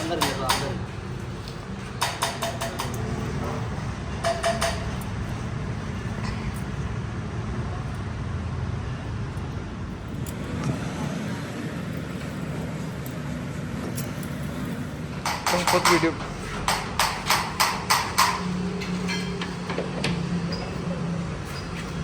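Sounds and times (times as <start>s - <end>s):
workshop machinery hum: 0.0s - 22.0s
metal parts clinking: 11.8s - 19.6s.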